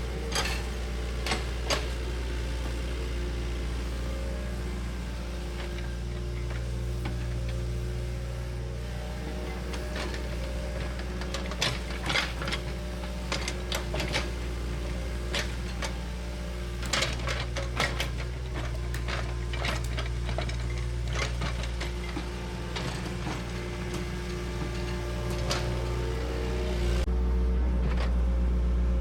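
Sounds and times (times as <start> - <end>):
bulldozer diesel engine running: 0.0 - 29.0
metallic clanks and clicks: 0.3 - 2.0.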